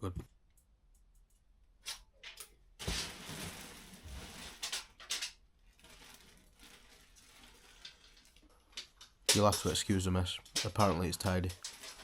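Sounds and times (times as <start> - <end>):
rustling scrape: 2.8 - 4.9, 5.7 - 8.4, 11.3 - 12.0.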